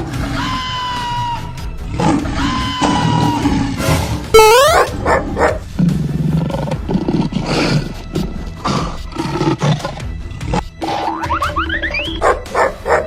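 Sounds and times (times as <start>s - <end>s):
background music: 0.0s - 13.0s
lion roars: 1.8s - 4.2s, 4.8s - 11.2s.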